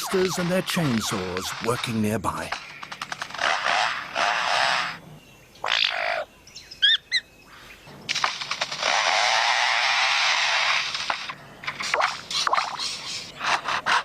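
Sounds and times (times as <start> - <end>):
bird rasping like a chainsaw: 2.6 - 5.0, 8.1 - 14.0.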